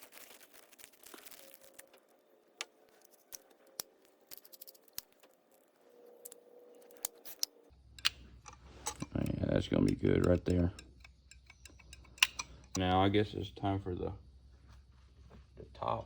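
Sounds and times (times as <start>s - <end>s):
small metal parts clicking: 0.0s - 12.8s.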